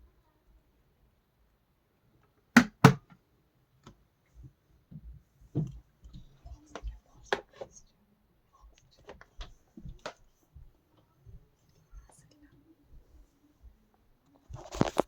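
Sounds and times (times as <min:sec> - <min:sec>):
plastic kettle clicks: 0:02.6 - 0:03.1.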